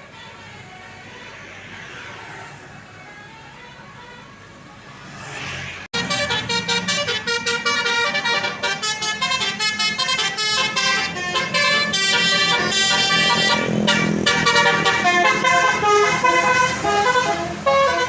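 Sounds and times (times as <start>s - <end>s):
passing vehicle road noise: 0.0s - 18.0s
multi-tone air horn melody: 5.9s - 18.0s.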